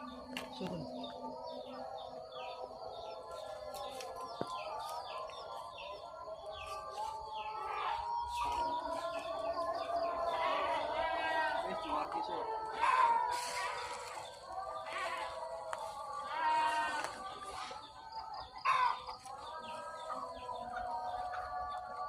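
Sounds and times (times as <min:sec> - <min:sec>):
small birds chirping: 0:00.0 - 0:22.0.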